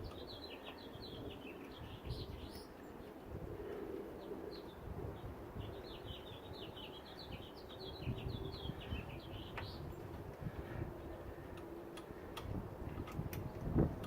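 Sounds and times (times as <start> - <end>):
songbird chirping: 0.0 - 12.4.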